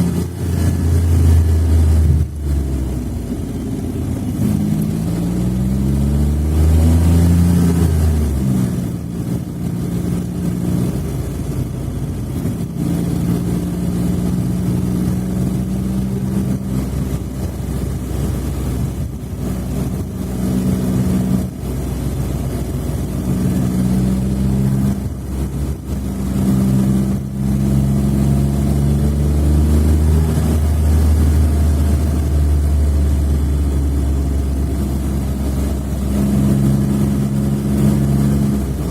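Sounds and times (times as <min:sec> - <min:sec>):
small car engine running: 0:00.0 - 0:38.9.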